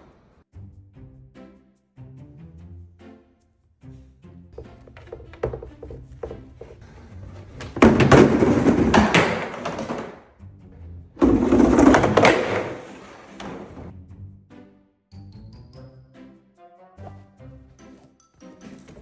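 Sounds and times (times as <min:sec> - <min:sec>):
background music: 0:00.1 - 0:19.0
sled clattering down stairs: 0:04.6 - 0:10.3, 0:11.2 - 0:13.9.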